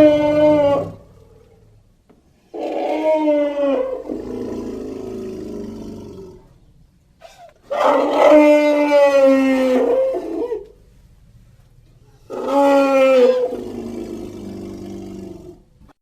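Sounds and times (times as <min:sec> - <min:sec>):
elephant calling: 0:00.0 - 0:01.5, 0:02.5 - 0:06.4, 0:07.2 - 0:10.8, 0:12.1 - 0:15.5.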